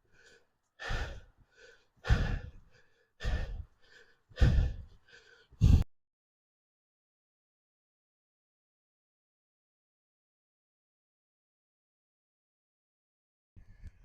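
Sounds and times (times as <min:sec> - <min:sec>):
person breathing heavily: 0:00.0 - 0:05.9.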